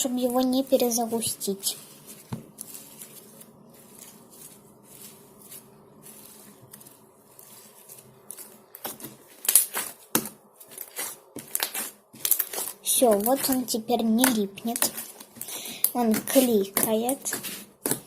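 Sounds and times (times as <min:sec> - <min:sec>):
slime crackling and clicking: 0:08.3 - 0:18.0.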